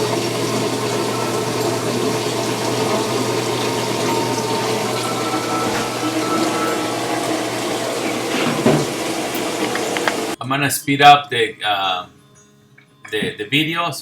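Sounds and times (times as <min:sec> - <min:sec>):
water running into washer tub: 0:00.0 - 0:10.4
low hum: 0:00.7 - 0:10.4.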